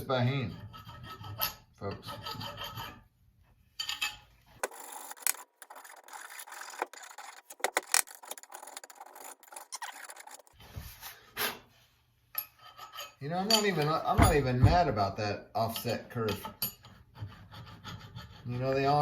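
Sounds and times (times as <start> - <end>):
hand tool scraping over wood: 4.6 - 11.6, 16.8 - 19.0.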